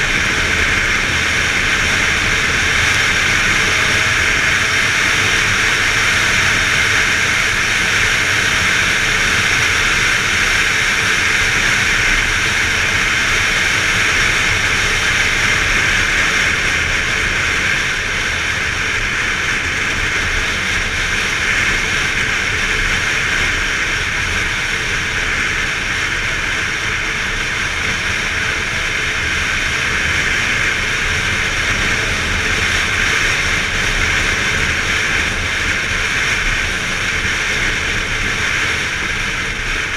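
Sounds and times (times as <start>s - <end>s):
motorbike engine running: 0.0s - 39.9s
wind rush: 0.0s - 39.9s.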